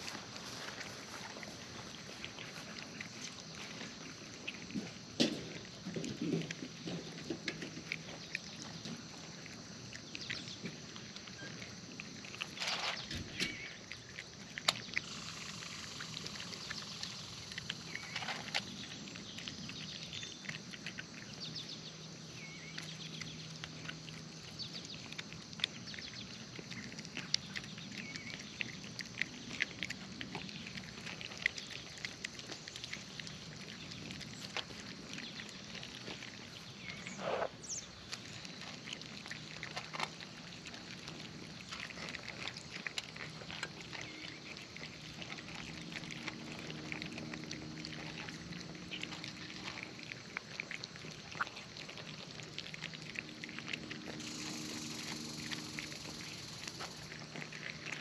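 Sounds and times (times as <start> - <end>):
cats chewing wet food: 0.0 - 58.0
low background hum: 0.0 - 58.0.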